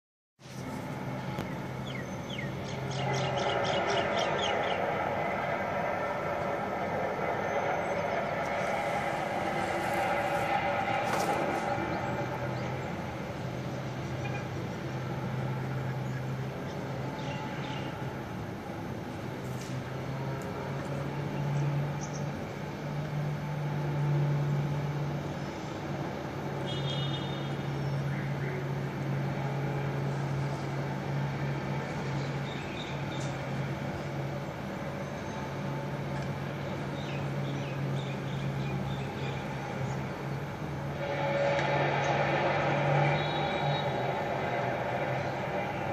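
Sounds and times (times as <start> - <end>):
low hum with held tones: 0.4 - 45.9
low steady drone: 0.4 - 45.9.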